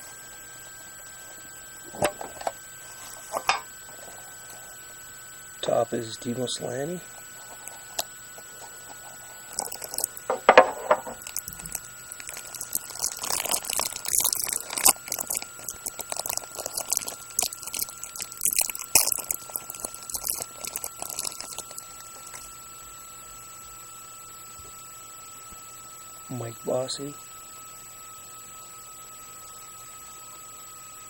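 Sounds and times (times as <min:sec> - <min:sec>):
card packaging crinkling: 0:08.7 - 0:22.5.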